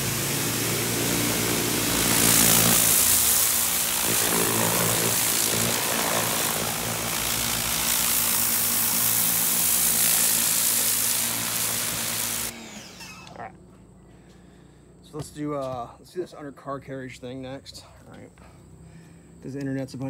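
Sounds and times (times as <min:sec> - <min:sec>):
high-pressure water jet hissing: 0:00.0 - 0:13.0
pressure washer pump motor hum: 0:00.0 - 0:13.4.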